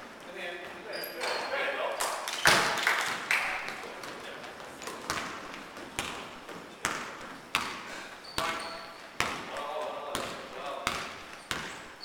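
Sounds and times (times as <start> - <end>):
basketball bouncing on wooden floor: 4.8 - 12.0.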